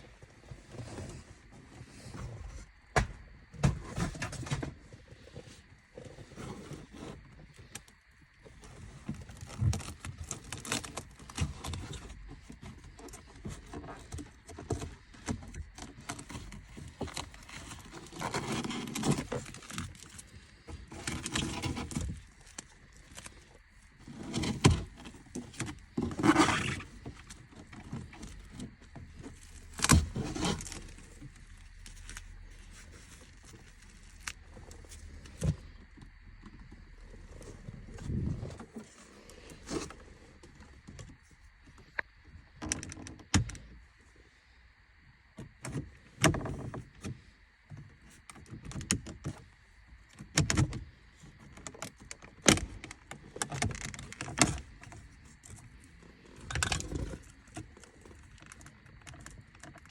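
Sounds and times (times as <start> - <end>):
rustling: 8.4 - 42.0.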